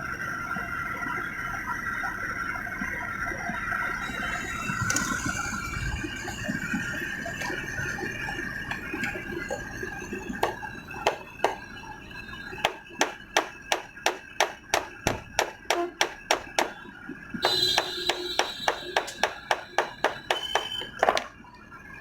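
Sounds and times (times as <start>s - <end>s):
hammer tapping on metal: 10.4s - 11.6s, 12.6s - 16.8s, 17.4s - 21.3s.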